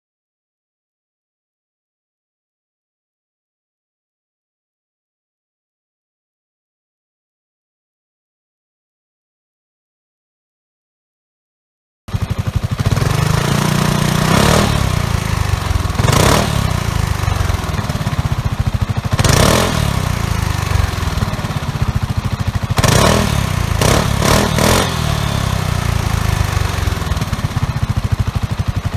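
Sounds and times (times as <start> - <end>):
scooter engine idling and revving: 12.1 - 28.9.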